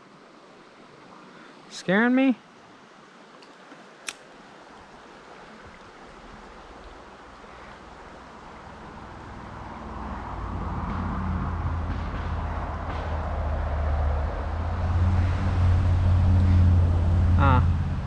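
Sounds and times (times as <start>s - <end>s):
vehicle engine humming: 7.8s - 18.0s.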